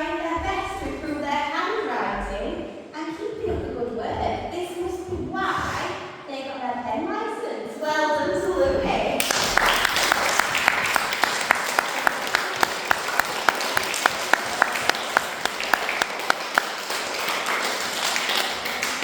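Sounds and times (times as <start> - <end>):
children applauding: 9.2 - 19.0
loud steady clapping: 9.2 - 19.0.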